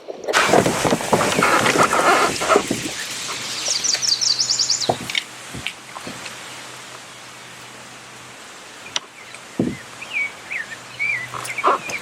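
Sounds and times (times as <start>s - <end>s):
outdoor background: 0.0s - 12.0s
rustling and clattering: 0.1s - 3.5s
bird trill: 2.9s - 5.0s, 9.2s - 12.0s.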